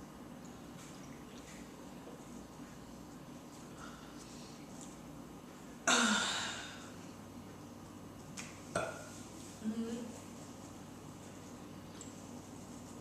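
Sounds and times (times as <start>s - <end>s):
woman burping: 5.8s - 6.8s.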